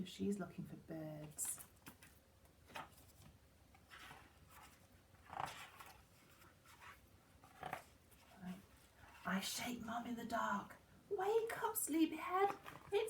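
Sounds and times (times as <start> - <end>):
paper rustling: 1.2 - 9.3.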